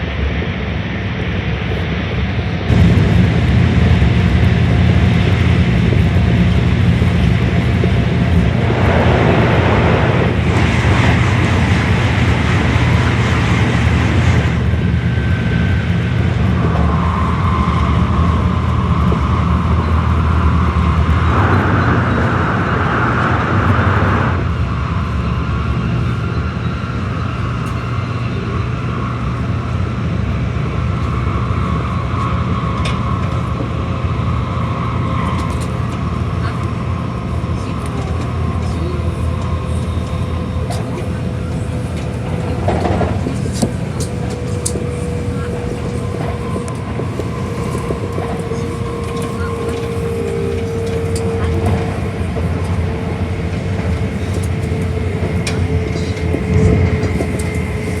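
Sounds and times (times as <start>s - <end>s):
train rumble: 0.0s - 58.0s
steady whine: 0.2s - 27.8s, 29.1s - 58.0s
rushing noise: 2.7s - 19.4s, 20.0s - 25.5s.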